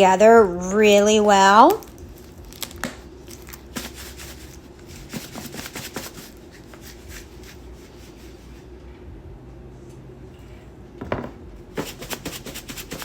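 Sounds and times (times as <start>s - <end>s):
powders stirred in a container: 3.2s - 8.6s, 11.8s - 13.0s.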